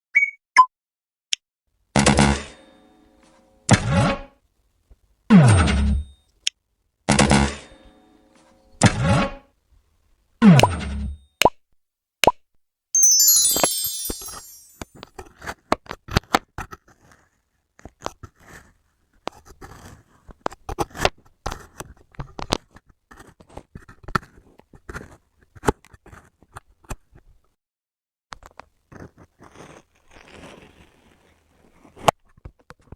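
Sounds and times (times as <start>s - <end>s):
high chime sound effect: 13.0s - 14.8s.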